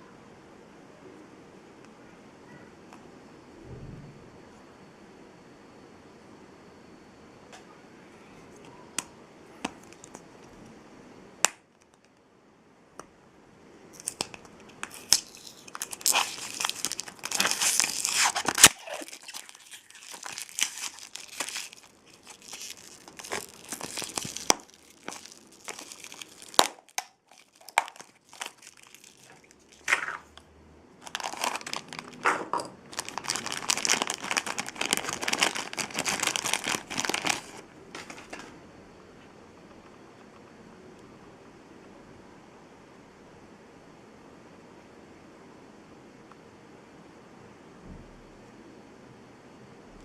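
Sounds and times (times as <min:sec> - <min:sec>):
plastic packaging crinkling: 0:09.8 - 0:10.5, 0:14.0 - 0:30.4, 0:31.0 - 0:38.6.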